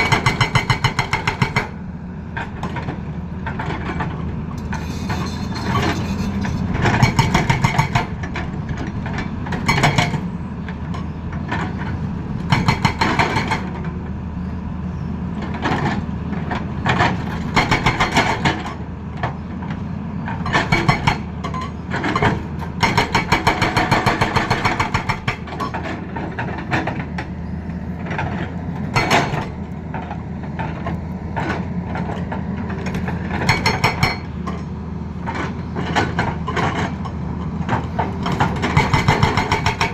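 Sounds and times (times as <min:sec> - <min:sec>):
excavator diesel engine running: 0:00.0 - 0:39.9
hydraulic breaker hammering: 0:38.3 - 0:39.9.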